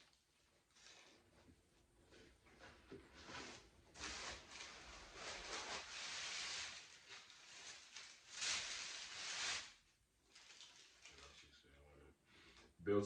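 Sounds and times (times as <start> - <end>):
soft rustling handling noise: 0.0 - 12.8.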